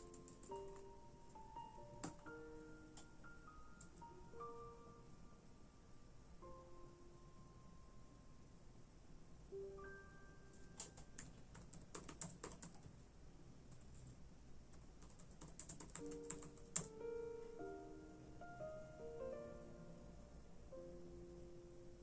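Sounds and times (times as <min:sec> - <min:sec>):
typing on computer keyboard: 0:00.0 - 0:00.9, 0:01.8 - 0:02.3, 0:10.7 - 0:13.0, 0:13.7 - 0:17.0
soft piano notes: 0:00.0 - 0:22.0.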